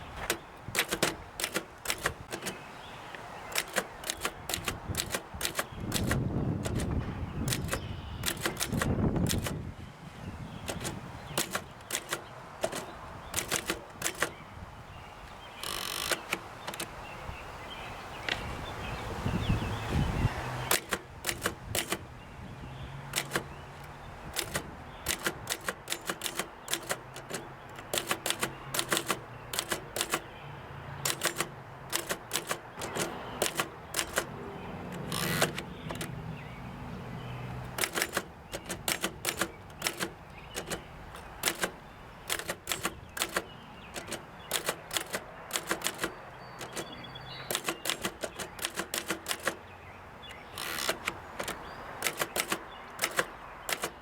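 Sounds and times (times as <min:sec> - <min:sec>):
typewriter keystroke clacks: 0:00.2 - 0:02.6, 0:03.5 - 0:09.7, 0:10.6 - 0:14.4, 0:15.6 - 0:16.9, 0:20.7 - 0:22.0, 0:23.1 - 0:23.5, 0:24.3 - 0:30.3, 0:31.0 - 0:36.2, 0:37.6 - 0:49.6, 0:50.5 - 0:54.0.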